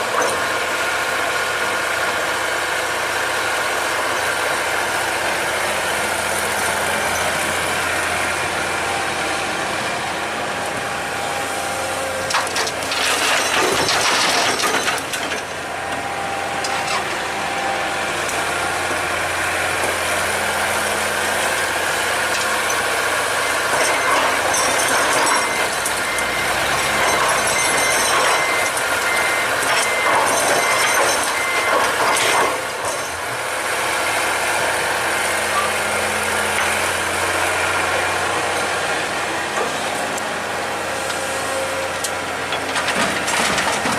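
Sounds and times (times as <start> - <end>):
excavator diesel engine running: 0.0 - 43.9
hydraulic and bucket noise: 0.0 - 43.9.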